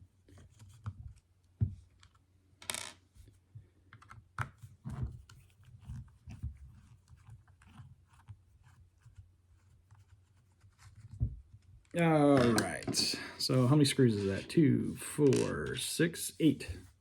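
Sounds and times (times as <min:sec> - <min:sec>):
light clicks and taps of screws: 0:03.9 - 0:04.6.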